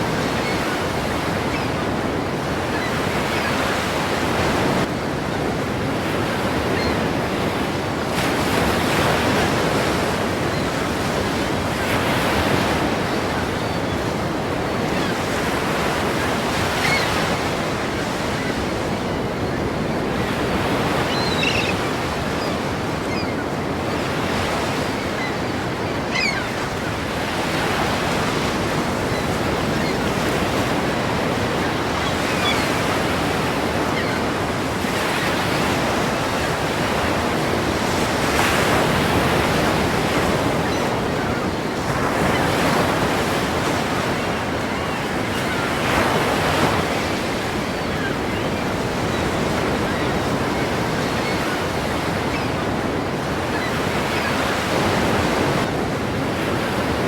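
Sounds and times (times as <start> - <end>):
ocean waves crashing: 0.0 - 57.0.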